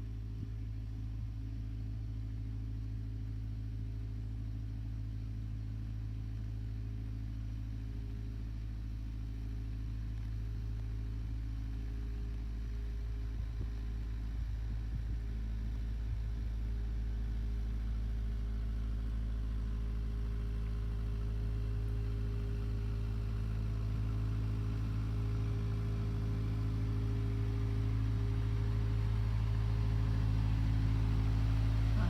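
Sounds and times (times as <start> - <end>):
boat engine running at low revs: 21.5 - 32.0.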